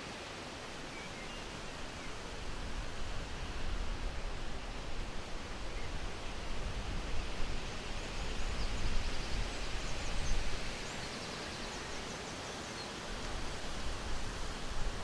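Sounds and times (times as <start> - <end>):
wind rumbling on microphone: 1.7 - 11.0.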